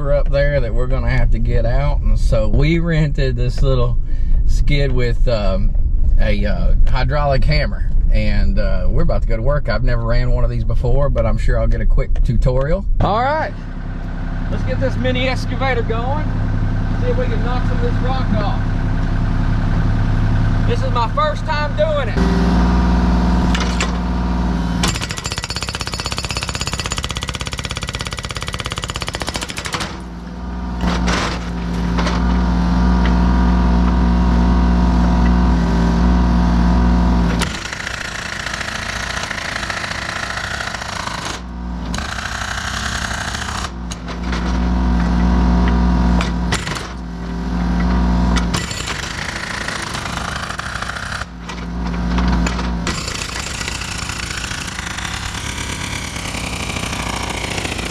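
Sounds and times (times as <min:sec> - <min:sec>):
excavator engine running: 0:13.0 - 0:57.9
hydraulic hammer pounding rock: 0:23.4 - 0:24.1, 0:24.8 - 0:30.2, 0:30.8 - 0:34.0, 0:37.2 - 0:47.2, 0:48.4 - 0:57.9.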